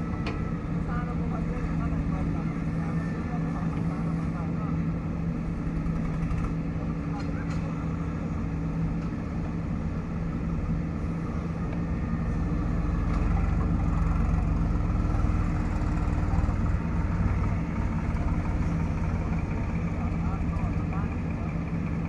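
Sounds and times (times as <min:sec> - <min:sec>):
heavy diesel engine running: 0:00.0 - 0:22.0.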